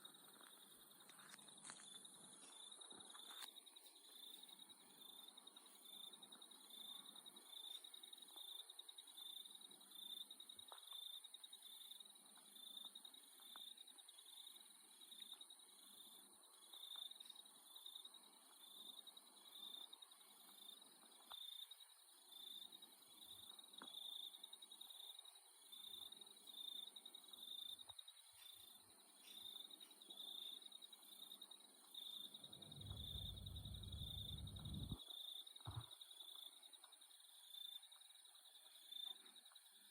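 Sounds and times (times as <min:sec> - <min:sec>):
night insects trilling: 0:00.0 - 0:39.9
rapidly pulsing insect trill: 0:00.0 - 0:39.9.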